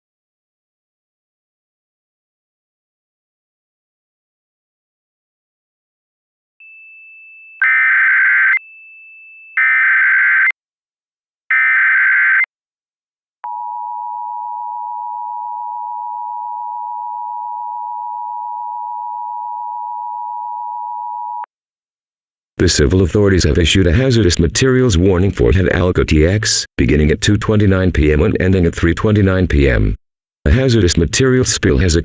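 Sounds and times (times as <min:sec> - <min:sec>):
faint steady high tone: 0:06.6 - 0:07.6, 0:08.6 - 0:09.6.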